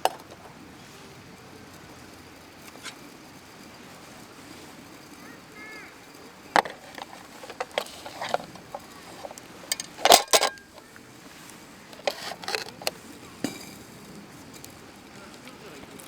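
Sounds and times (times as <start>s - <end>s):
clinks of small hard objects: 6.5s - 10.9s, 12.0s - 13.8s.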